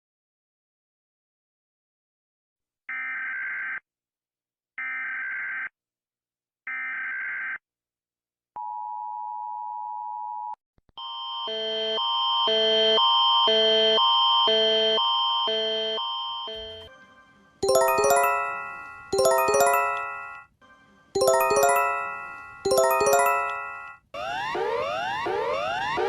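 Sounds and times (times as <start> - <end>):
electronic alert chime: 17.6 - 20.4, 21.2 - 24.0.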